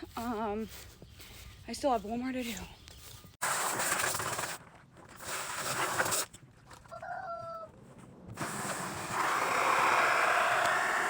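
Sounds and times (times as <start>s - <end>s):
water rushing from a hose: 8.4s - 11.0s.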